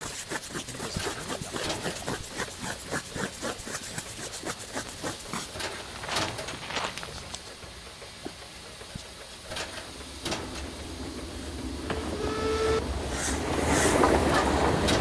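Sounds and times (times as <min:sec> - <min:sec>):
steam locomotive chuffing: 0:00.0 - 0:15.0
steam hiss: 0:07.3 - 0:15.0
burst of steam: 0:12.3 - 0:14.2.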